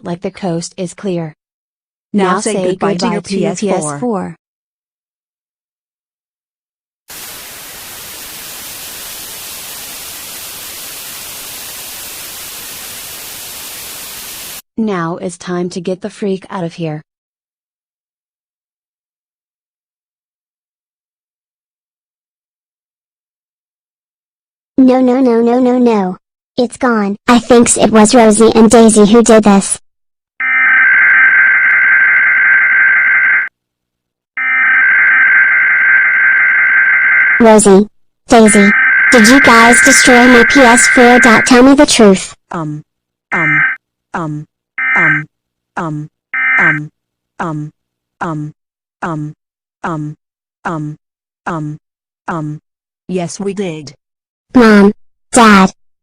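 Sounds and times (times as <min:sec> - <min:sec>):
white noise static hiss: 0:07.1 - 0:14.6
loud multi-pitch electronic tone: 0:30.4 - 0:33.5, 0:34.4 - 0:37.6, 0:38.3 - 0:41.6, 0:43.4 - 0:43.8, 0:44.8 - 0:45.3, 0:46.4 - 0:46.8.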